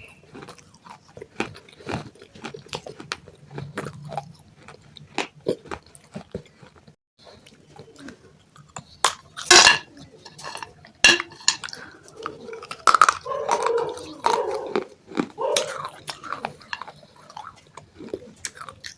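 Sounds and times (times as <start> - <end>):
chewing clay pot pieces: 0.0 - 18.9.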